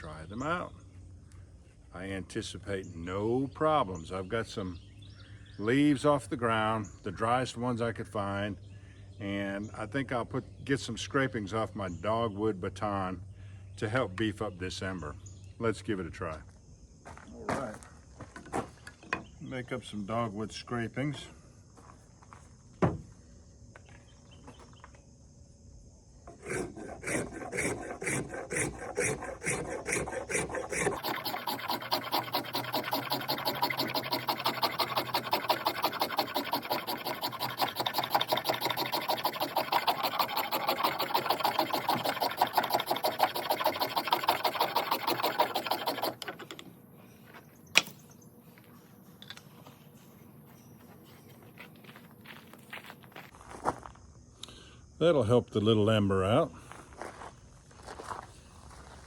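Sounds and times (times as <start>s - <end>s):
wood being scraped: 26.3s - 46.7s.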